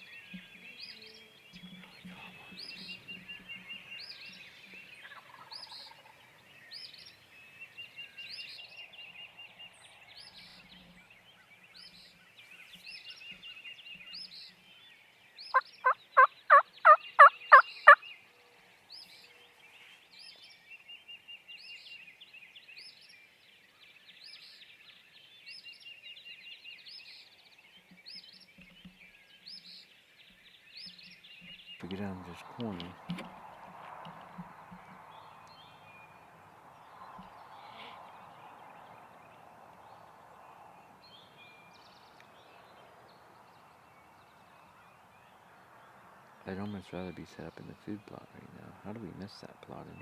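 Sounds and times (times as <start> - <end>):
songbirds chirping and trilling: 0.0 - 50.0
turkey yelps: 15.8 - 18.0.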